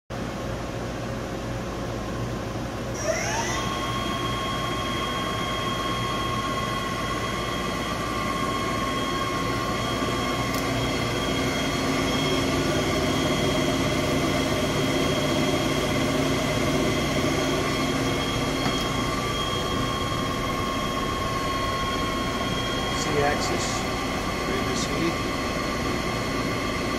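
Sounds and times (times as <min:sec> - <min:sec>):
drive winding up to whine: 0:02.9 - 0:26.9
machine tool hum: 0:02.9 - 0:26.9.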